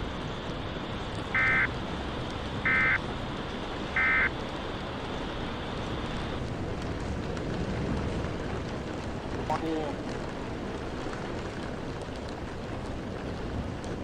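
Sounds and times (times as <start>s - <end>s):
steady rain: 0.0s - 14.0s
warbling digital data bursts: 1.3s - 1.8s, 2.6s - 3.0s.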